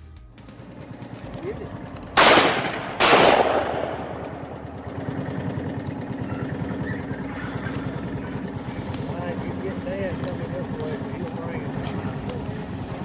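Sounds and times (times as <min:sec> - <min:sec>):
vehicle engine idling: 0:00.0 - 0:13.0
shotgun shot with echo: 0:02.2 - 0:04.5.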